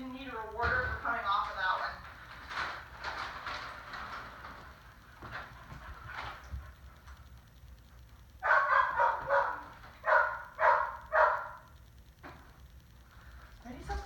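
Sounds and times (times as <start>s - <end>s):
dog barking: 8.4s - 11.7s.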